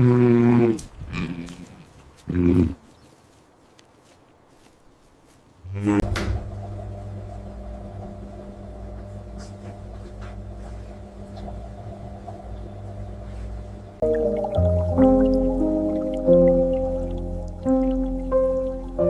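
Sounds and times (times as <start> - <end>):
steady low hum: 5.7 - 19.0
music with changing notes: 14.0 - 19.0.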